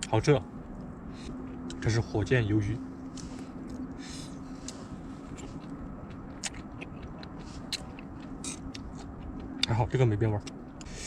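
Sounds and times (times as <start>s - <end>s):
steady low hum: 0.0s - 11.0s
person chewing: 1.1s - 1.8s, 3.1s - 11.0s
mouth clicks and smacks: 4.6s - 9.8s.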